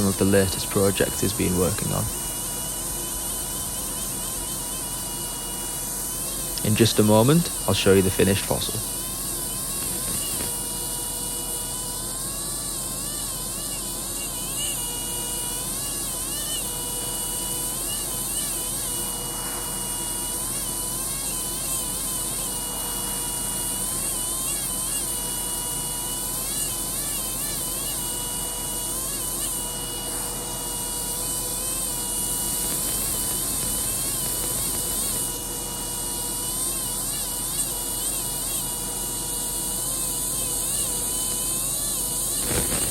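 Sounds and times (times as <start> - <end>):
air scribe buzzing: 0.0 - 42.9
air hissing: 19.0 - 21.0.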